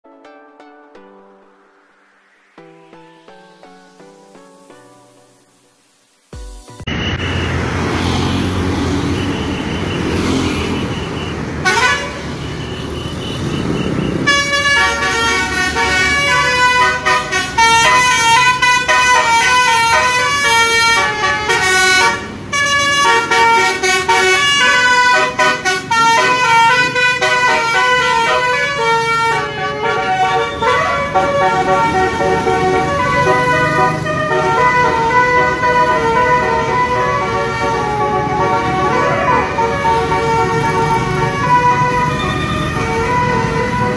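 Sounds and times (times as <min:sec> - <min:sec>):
bus engine running: 0:06.9 - 0:43.9
musical air horn melody: 0:09.1 - 0:43.9.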